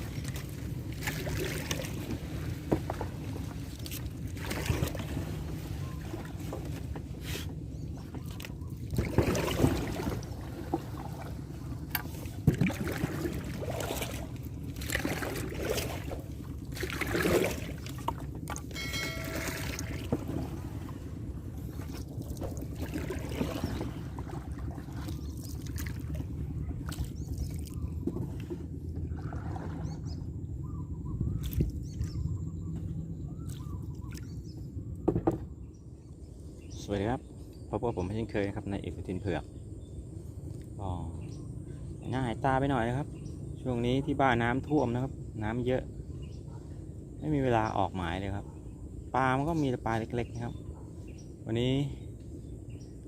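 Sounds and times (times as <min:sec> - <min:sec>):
water sloshing and splashing: 0:00.0 - 0:38.6.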